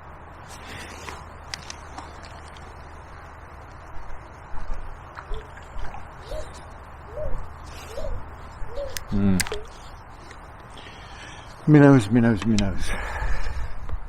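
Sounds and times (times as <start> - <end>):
wind: 0.0 - 14.0
dove cooing: 6.2 - 9.8.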